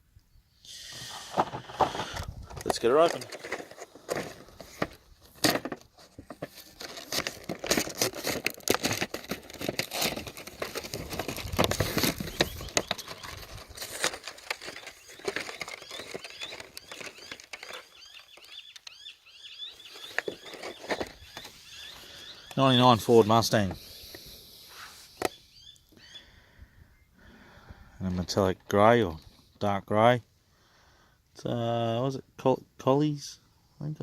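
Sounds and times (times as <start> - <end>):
plastic packaging torn and crinkled: 2.6 - 18.9.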